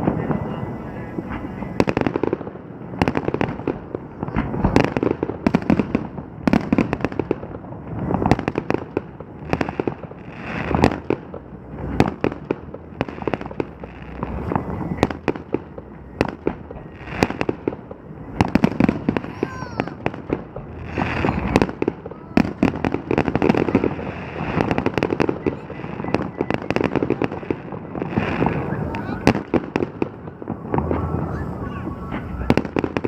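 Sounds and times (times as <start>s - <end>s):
fireworks bangs and crackles: 0.0s - 33.0s
low rumble: 9.0s - 29.3s, 30.1s - 33.0s.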